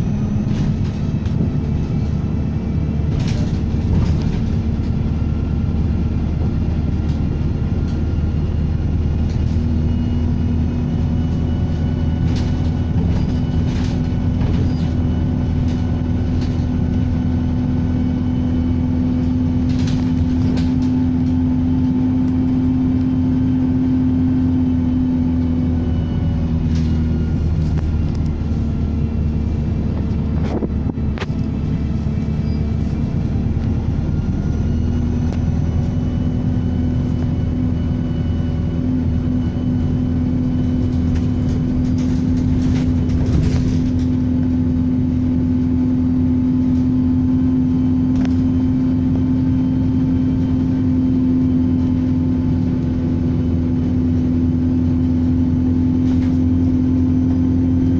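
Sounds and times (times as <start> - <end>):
bus engine running: 0.0 - 57.9.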